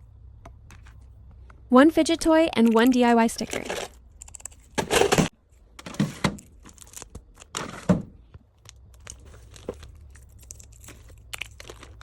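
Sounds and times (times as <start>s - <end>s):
plastic packaging crinkling: 6.3s - 7.9s, 8.6s - 12.0s.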